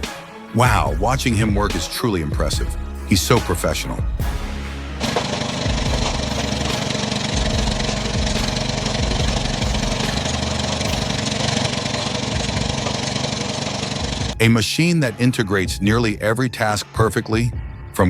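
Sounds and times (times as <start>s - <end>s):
engine running: 4.2s - 14.4s.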